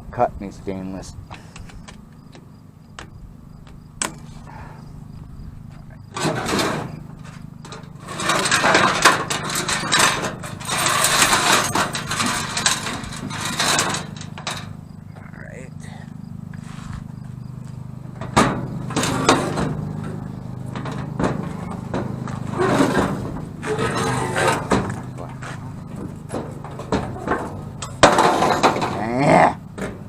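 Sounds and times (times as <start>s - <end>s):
lawn mower drone: 1.2s - 30.0s
metal pipe scraping and rattling: 5.9s - 15.0s, 18.0s - 29.2s.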